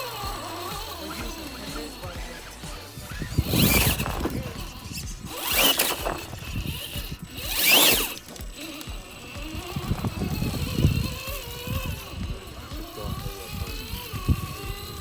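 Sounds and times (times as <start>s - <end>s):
electric motor whining: 0.0s - 15.0s
rushing scrape: 1.6s - 13.3s.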